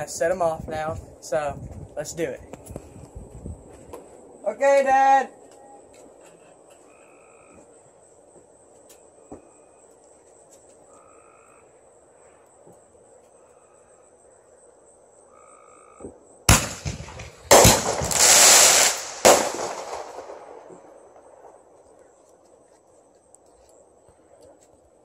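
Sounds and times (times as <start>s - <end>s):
firework crackling and hissing: 16.5s - 20.8s
firework bang: 16.5s - 21.6s.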